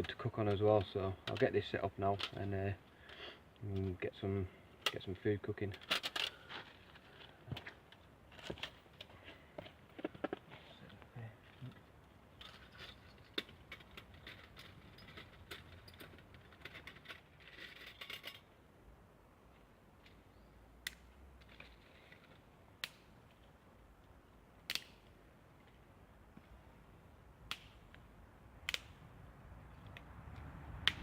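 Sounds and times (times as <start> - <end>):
camp stove clicks and clinks: 24.7 - 25.1, 28.6 - 29.0.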